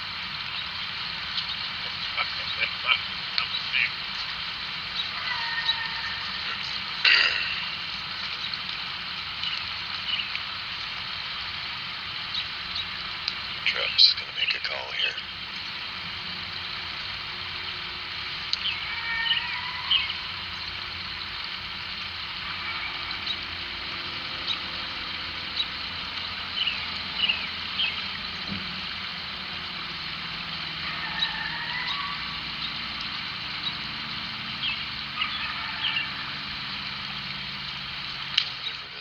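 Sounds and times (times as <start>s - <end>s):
coyote-like yips and howls: 5.0s - 7.7s, 18.6s - 20.5s, 22.4s - 23.5s, 30.8s - 32.8s, 34.6s - 36.4s.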